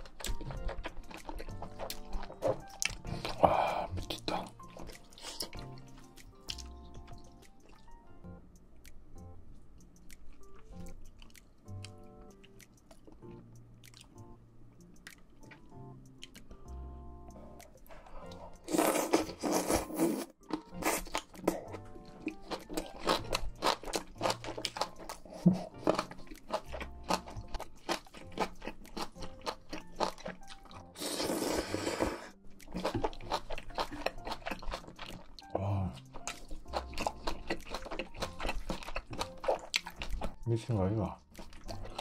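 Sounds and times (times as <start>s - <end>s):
crunchy chewing: 0.0s - 8.0s, 10.0s - 14.2s, 17.6s - 40.4s, 41.2s - 42.0s
soft background music: 0.0s - 42.0s
breathy bursts: 3.1s - 4.5s.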